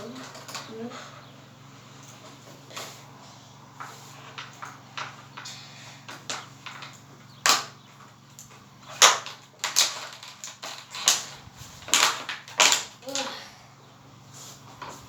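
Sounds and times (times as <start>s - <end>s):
hands scraping and knocking objects: 3.8s - 13.4s.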